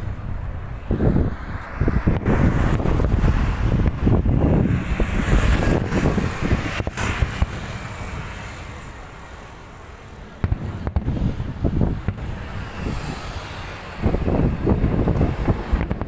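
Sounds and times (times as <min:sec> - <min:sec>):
wind buffeting microphone: 0:00.0 - 0:09.2, 0:10.1 - 0:16.0
fireworks bangs and crackles: 0:00.0 - 0:16.0.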